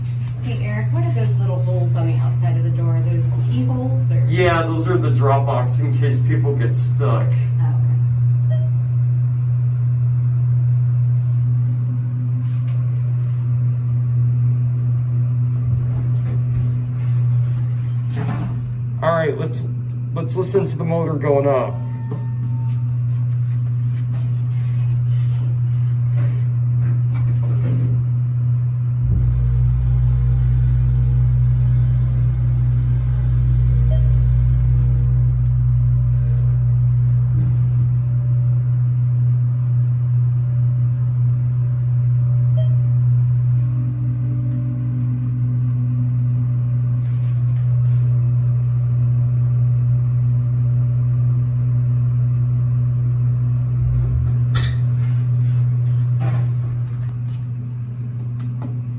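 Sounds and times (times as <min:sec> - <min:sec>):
deep rumble: 0:00.0 - 0:58.9
elevator motor hum: 0:00.0 - 0:58.9.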